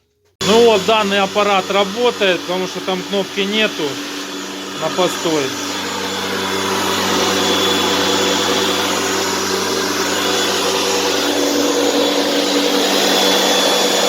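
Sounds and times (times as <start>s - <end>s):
electric lawn mower motor running: 0.4s - 14.0s.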